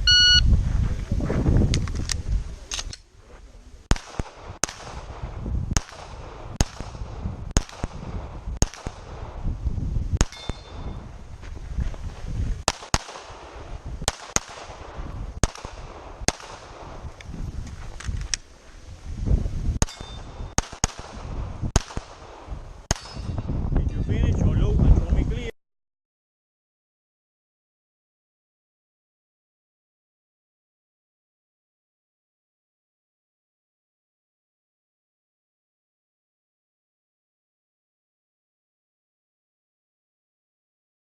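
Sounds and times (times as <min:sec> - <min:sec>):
pistol shots: 0:03.9 - 0:05.2, 0:05.8 - 0:09.2, 0:10.2 - 0:11.0, 0:12.6 - 0:17.0, 0:19.8 - 0:23.5.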